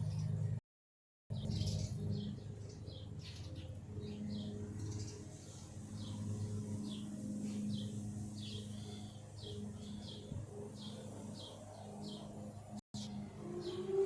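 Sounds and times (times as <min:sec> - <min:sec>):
small birds chirping: 0:01.3 - 0:14.0.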